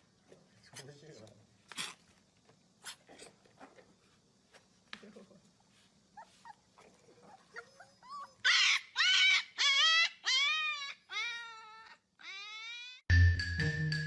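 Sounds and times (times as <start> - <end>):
dog whining and crying: 7.2 - 13.0.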